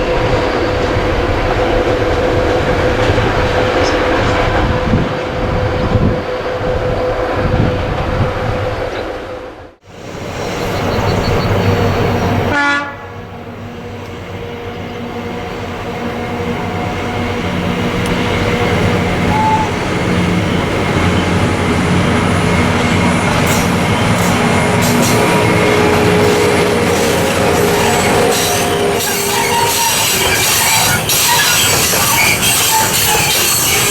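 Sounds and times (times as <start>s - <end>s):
diesel freight train running: 0.0s - 33.9s
locomotive horn: 11.7s - 19.9s, 23.8s - 33.9s.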